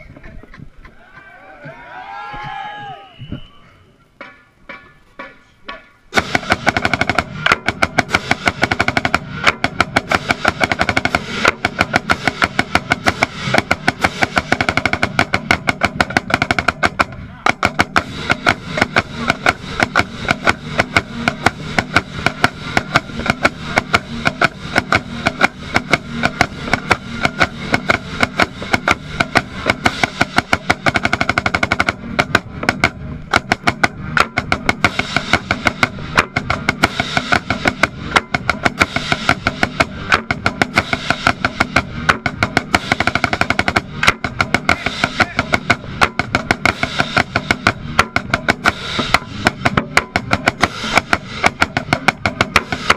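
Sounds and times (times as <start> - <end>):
crisp snare drum strokes: 0.0 - 52.9
marching band playing: 0.9 - 52.9.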